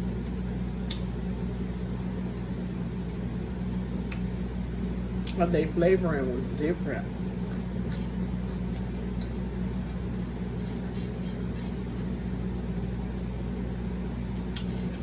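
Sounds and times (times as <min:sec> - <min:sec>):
steady low hum: 0:00.0 - 0:15.0
person chewing: 0:00.2 - 0:01.2.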